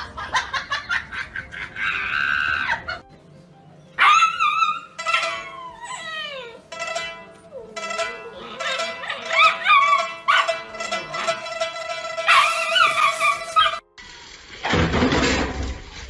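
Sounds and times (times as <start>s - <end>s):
background music: 0.0s - 14.0s
dog howling and whining: 4.0s - 6.7s.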